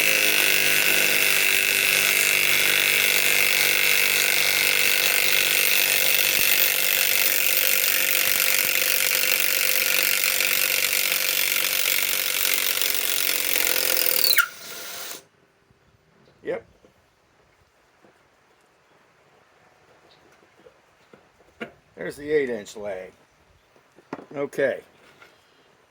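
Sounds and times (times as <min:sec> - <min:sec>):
impact wrench hammering: 0:00.0 - 0:15.2.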